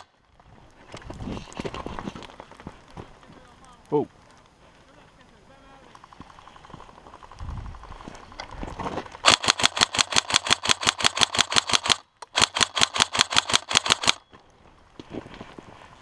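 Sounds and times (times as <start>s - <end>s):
airsoft rifle full-auto bursts: 9.2s - 14.2s.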